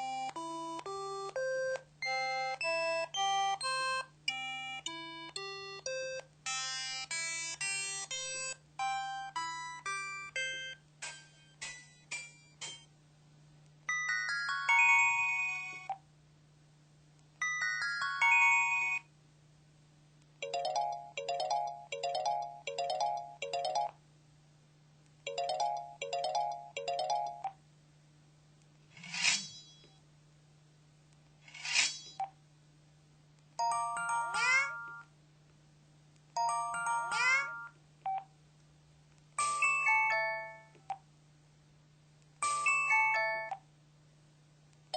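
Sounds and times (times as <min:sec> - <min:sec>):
phone chiming tone melodies: 0:20.4 - 0:23.9, 0:25.3 - 0:27.5.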